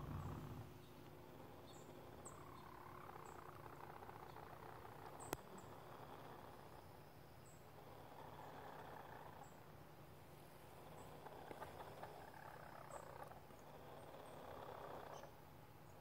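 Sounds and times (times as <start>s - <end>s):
chickens trilling: 0.0s - 6.8s, 10.7s - 15.3s.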